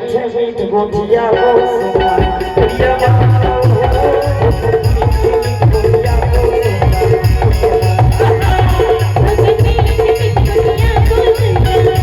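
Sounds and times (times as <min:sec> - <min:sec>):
folk song with drums: 0:00.0 - 0:12.0.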